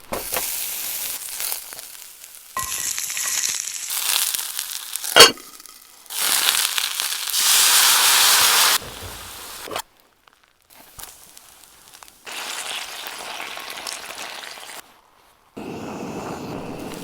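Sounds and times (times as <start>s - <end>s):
food sizzling: 0.1s - 9.8s, 10.7s - 15.0s
sharp metallic clank: 2.6s - 3.6s, 5.2s - 5.5s.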